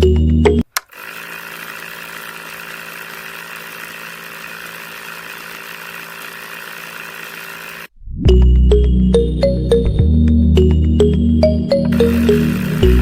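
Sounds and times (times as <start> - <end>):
small motor buzzing whine: 0.7 - 7.9, 11.9 - 13.0.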